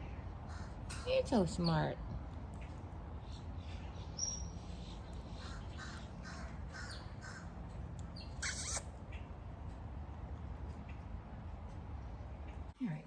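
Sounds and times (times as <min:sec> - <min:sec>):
parrot whistling: 0:08.4 - 0:08.8
parrot harsh squawk: 0:08.4 - 0:08.9.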